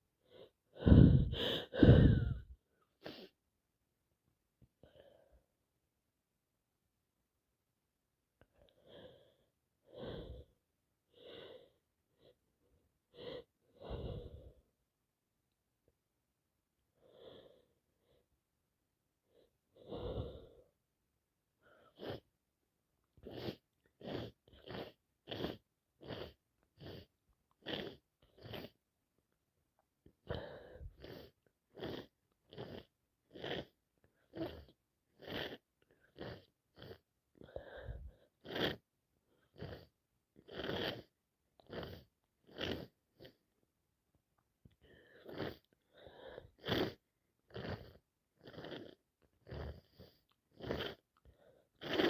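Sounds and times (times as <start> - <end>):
woman sniffing through nose: 0.8 - 2.4, 3.0 - 3.4, 21.9 - 22.3, 23.2 - 28.8, 30.3 - 33.7, 34.3 - 37.6, 38.4 - 38.8, 40.5 - 43.4, 45.1 - 51.0, 51.6 - 52.0.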